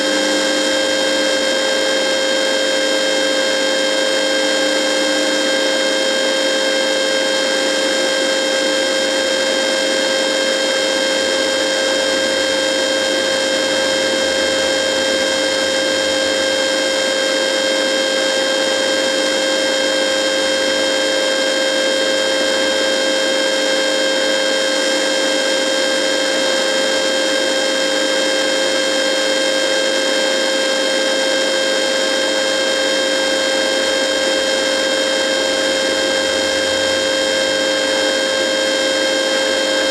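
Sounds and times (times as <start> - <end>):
radio buzzing: 10.8 - 17.7.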